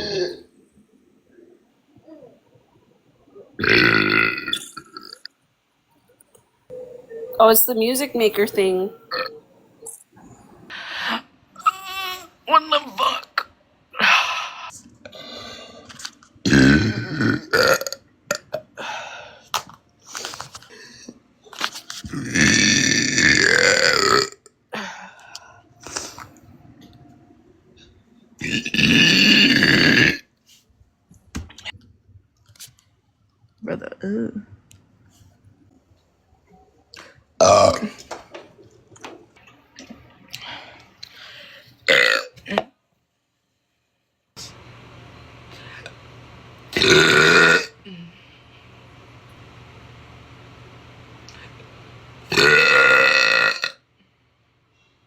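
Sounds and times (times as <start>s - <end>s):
woman burping loudly: 0.0s - 0.5s, 3.6s - 5.3s, 9.1s - 9.4s, 16.4s - 18.6s, 22.1s - 24.5s, 28.4s - 30.3s, 37.4s - 38.0s, 41.9s - 42.7s, 46.8s - 47.8s, 52.3s - 53.8s
quiet vocal sounds: 1.3s - 3.6s
woman belching: 3.6s - 5.2s, 9.1s - 9.4s, 16.5s - 18.6s, 22.1s - 24.4s, 28.4s - 30.2s, 37.4s - 38.0s, 41.9s - 42.7s, 46.8s - 47.8s, 52.3s - 53.8s.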